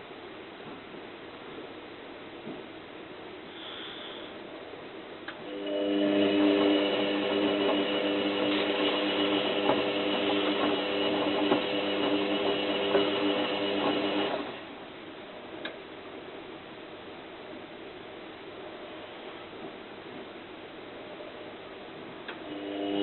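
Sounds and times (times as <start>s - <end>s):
washing machine motor humming: 5.3s - 14.8s, 22.2s - 23.0s.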